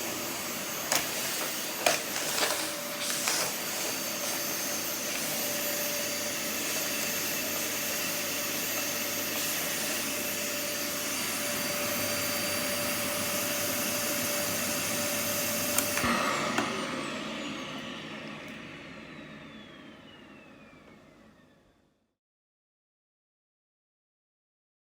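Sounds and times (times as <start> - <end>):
vacuum cleaner running: 0.0 - 22.0
vacuum cleaner switch click: 15.6 - 16.8.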